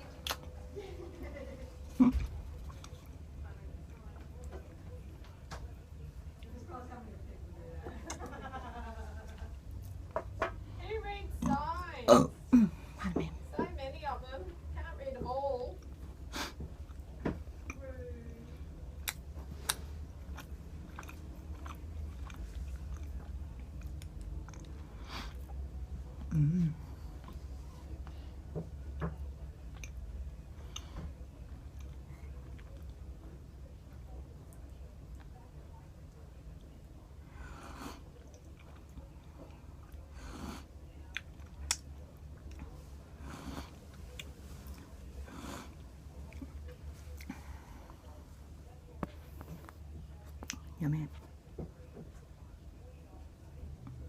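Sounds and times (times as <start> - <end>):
low background hum: 0.0 - 54.0
person chewing food: 1.9 - 3.2, 15.8 - 17.9, 18.9 - 28.7, 29.6 - 33.4, 36.6 - 48.2.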